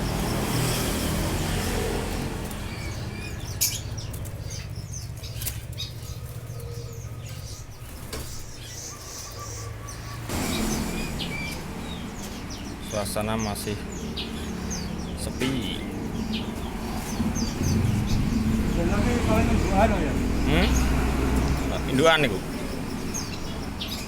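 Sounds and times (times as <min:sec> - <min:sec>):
birds fluttering wings: 0:00.0 - 0:09.1
bird chirps: 0:00.0 - 0:24.0.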